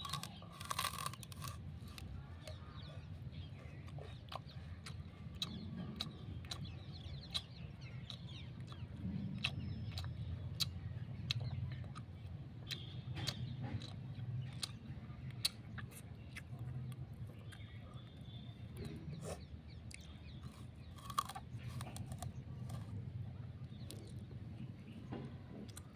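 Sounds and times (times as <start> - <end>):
sugarcane crunching when chewed: 0.0 - 25.9.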